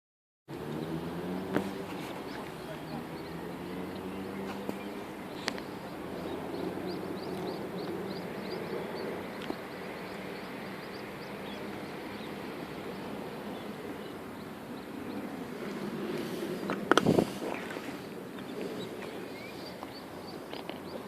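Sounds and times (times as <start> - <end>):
ducklings peeping: 2.0 - 15.3.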